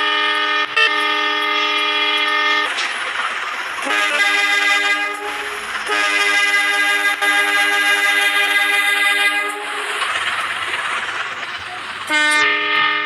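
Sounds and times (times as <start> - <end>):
locomotive air horn blasts: 0.0 - 2.8, 3.8 - 10.2, 12.0 - 13.0
rushing noise: 0.0 - 13.0.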